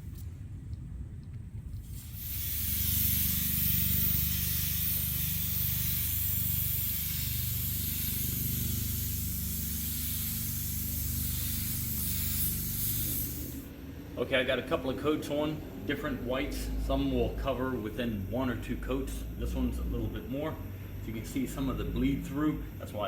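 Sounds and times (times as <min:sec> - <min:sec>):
low steady hum: 0:00.0 - 0:23.0
spray gun hissing: 0:01.8 - 0:13.7.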